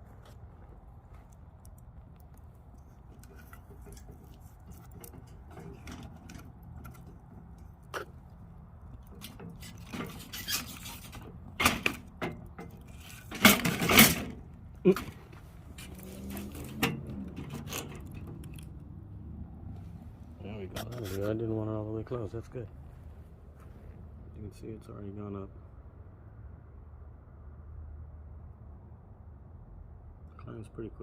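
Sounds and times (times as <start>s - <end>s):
metal air vent clanking: 3.2s - 18.8s.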